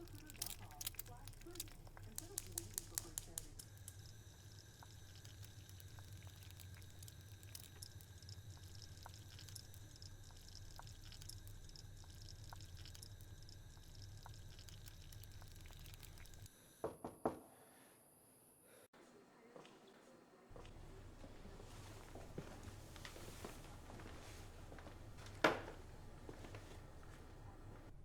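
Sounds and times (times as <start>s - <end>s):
soft ticks: 0.0s - 4.0s
low steady hum: 0.0s - 16.5s.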